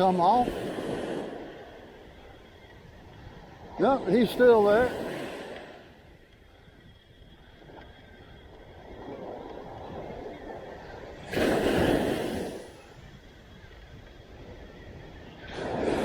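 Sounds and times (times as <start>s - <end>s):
ocean surf washing onto beach: 0.0s - 2.6s, 3.6s - 6.0s, 8.9s - 12.9s
wave breaking loudly: 11.3s - 12.7s.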